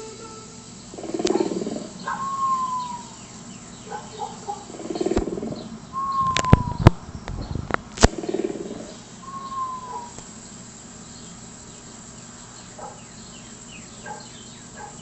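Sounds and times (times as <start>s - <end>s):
animal and bird calls: 0.0s - 15.0s
sharp clicks: 1.2s - 1.6s, 5.1s - 5.4s, 6.2s - 8.3s
falling whistled note: 6.0s - 7.0s, 9.2s - 10.2s.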